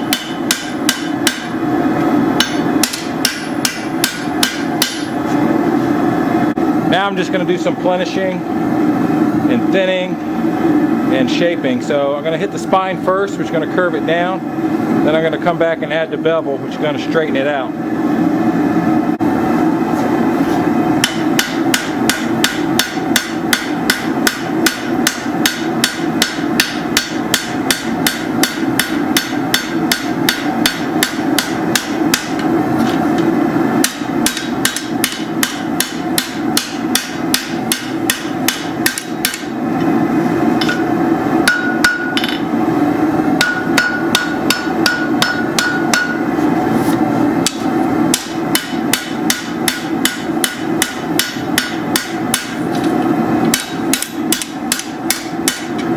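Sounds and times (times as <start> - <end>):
hammer striking steel on anvil: 0.0 - 1.6, 2.4 - 5.2, 21.0 - 32.5, 33.8 - 39.6, 40.6 - 42.5, 43.4 - 46.4, 47.4 - 55.9
steady hum: 0.0 - 55.9.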